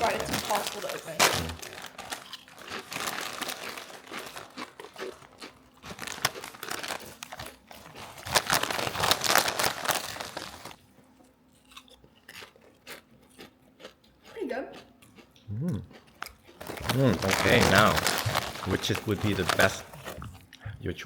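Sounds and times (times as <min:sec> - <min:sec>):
chips being crunched: 0:00.0 - 0:10.8, 0:16.2 - 0:19.9
foil chip bag crinkling: 0:00.0 - 0:10.9, 0:16.2 - 0:20.3.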